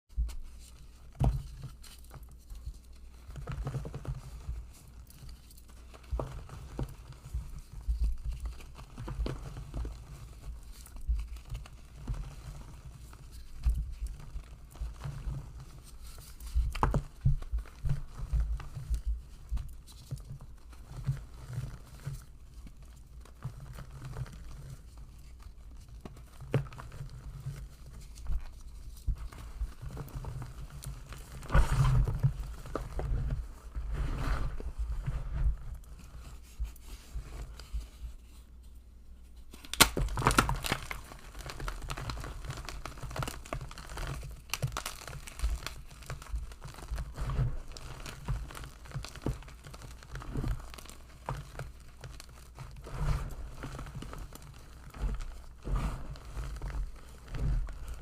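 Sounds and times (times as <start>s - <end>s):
sharp cracks: 39.6s - 40.9s.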